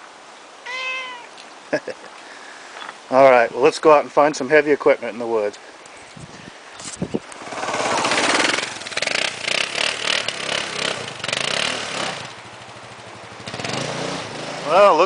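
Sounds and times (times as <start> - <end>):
motorcycle engine under throttle: 7.4 - 14.7.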